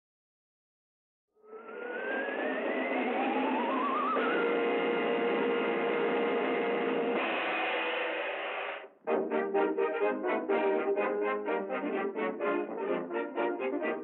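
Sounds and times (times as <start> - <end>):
old cartoon music with held chords: 1.5 - 7.5, 9.0 - 14.0.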